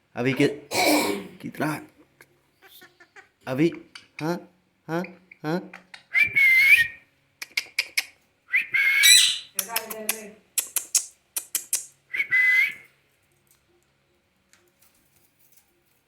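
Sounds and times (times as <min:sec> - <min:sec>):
parrot whistling: 0:06.1 - 0:07.0, 0:08.5 - 0:09.5
parrot clicks and chattering: 0:07.4 - 0:08.2, 0:09.5 - 0:11.9.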